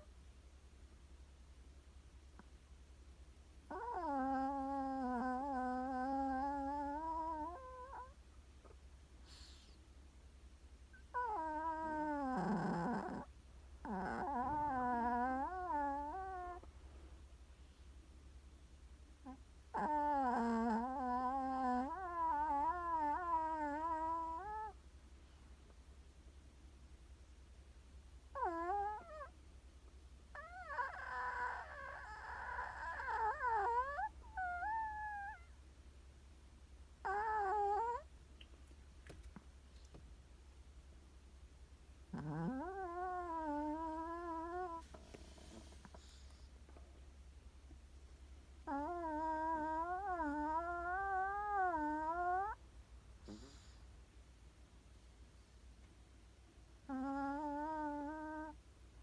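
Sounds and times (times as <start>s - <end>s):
dog snoring with whistling breaths: 3.7s - 8.2s, 9.2s - 9.8s, 10.9s - 16.6s, 19.2s - 24.8s, 28.3s - 29.3s, 30.3s - 35.5s, 37.0s - 38.1s, 42.1s - 46.5s, 48.6s - 52.6s, 53.2s - 53.9s, 56.8s - 58.6s.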